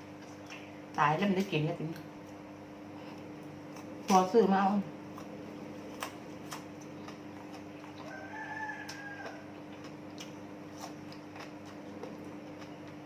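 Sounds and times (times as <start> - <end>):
steady low hum: 0.0 - 13.0
rooster crowing: 8.0 - 9.7.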